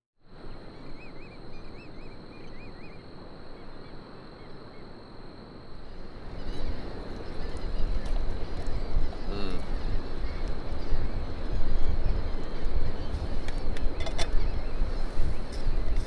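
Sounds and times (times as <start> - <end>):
wind and water rushing: 5.1 - 16.0
wind buffeting microphone: 5.6 - 16.0
bird calling: 6.2 - 16.0.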